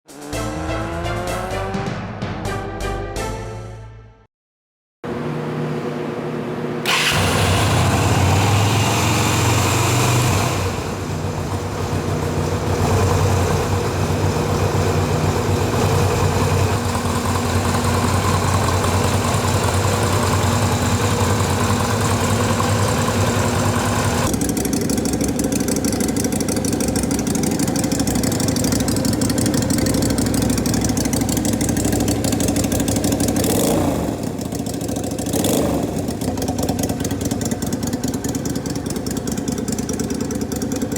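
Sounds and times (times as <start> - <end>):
motorcycle engine idling: 10.7 - 40.9.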